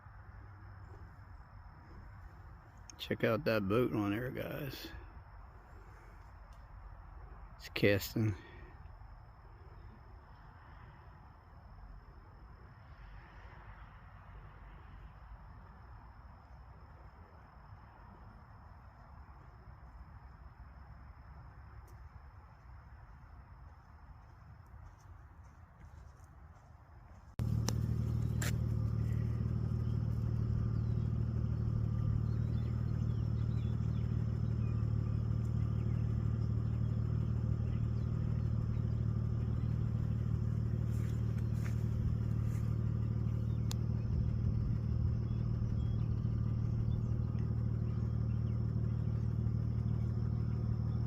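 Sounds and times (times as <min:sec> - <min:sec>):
faint chirps and clicks: 0:06.1 - 0:06.7, 0:27.4 - 0:51.0
low motor hum: 0:27.1 - 0:51.0.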